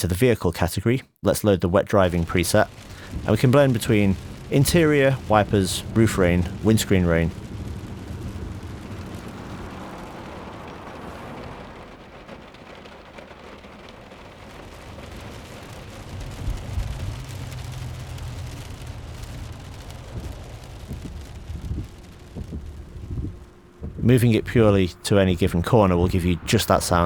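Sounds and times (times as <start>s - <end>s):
rain on car roof: 1.8s - 27.0s
deep low rumble: 2.2s - 12.2s, 14.3s - 25.8s
thumps: 20.0s - 24.1s.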